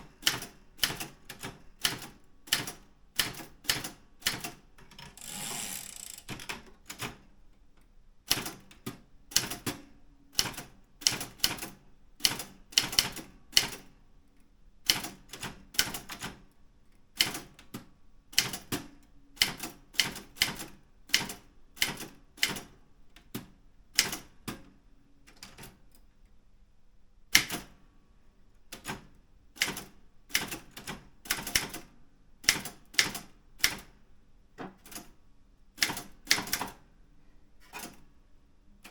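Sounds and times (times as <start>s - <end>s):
typewriter keystrokes: 0.2s - 7.1s
brief rasping noise: 5.1s - 6.3s.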